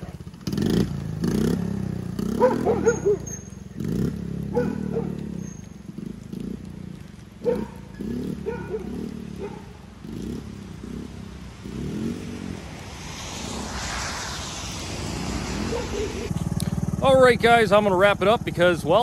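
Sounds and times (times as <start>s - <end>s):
small engine revving: 0.0s - 17.3s
rushing hiss: 10.4s - 17.0s.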